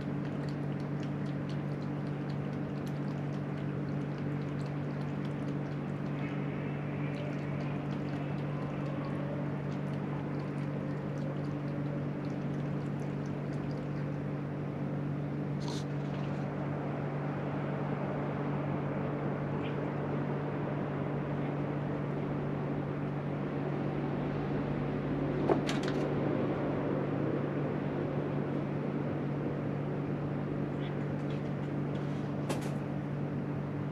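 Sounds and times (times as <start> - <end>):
low machine hum: 0.0 - 33.9.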